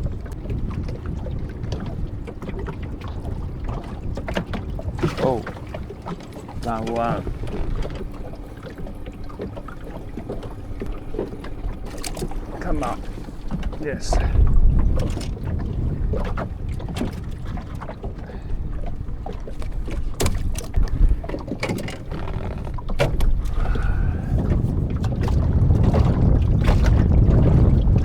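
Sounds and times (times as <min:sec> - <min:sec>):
wind rumbling on microphone: 0:00.0 - 0:28.0
sharp clicks and knocks: 0:19.6 - 0:23.3.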